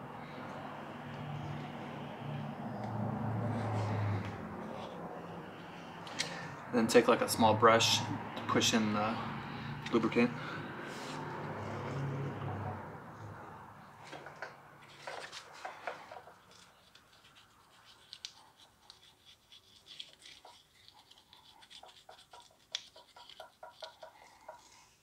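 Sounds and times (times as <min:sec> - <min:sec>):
brush bristles scratching metal: 0:16.1 - 0:24.7.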